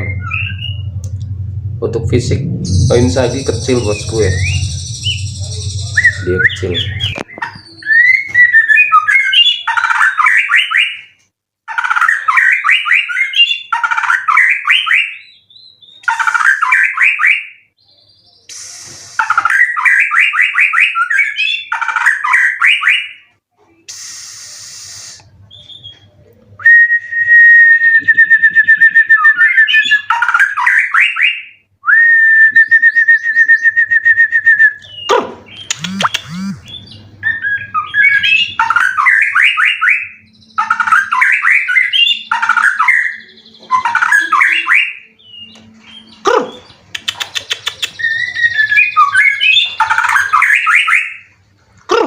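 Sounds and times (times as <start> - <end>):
songbird singing rattling phrases: 0.0 - 23.3, 25.2 - 26.2, 27.7 - 31.7, 32.6 - 51.4
bird long whistles: 23.9 - 25.3.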